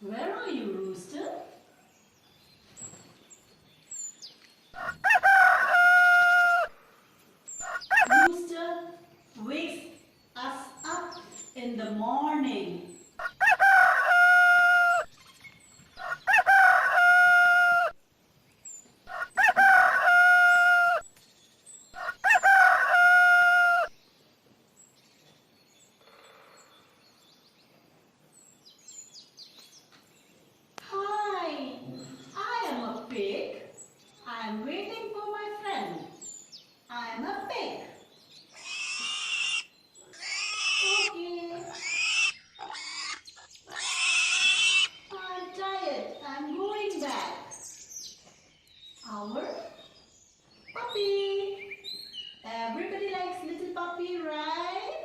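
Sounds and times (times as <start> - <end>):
rooster crowing: 4.8 - 6.8, 7.6 - 8.3, 13.2 - 15.1, 16.0 - 18.0, 19.1 - 21.0, 22.0 - 24.0
animal calling: 38.5 - 45.1.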